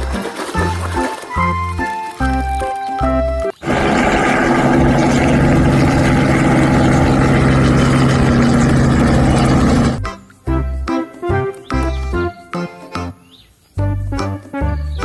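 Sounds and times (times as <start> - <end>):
engine running steadily: 3.6 - 10.0.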